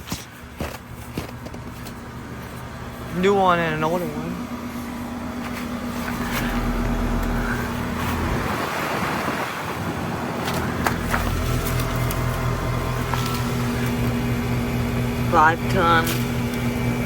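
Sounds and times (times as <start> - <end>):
compressor electrical hum: 0.0 - 17.0
condenser fans rushing: 0.0 - 17.0
broad rushing noise: 3.7 - 13.8.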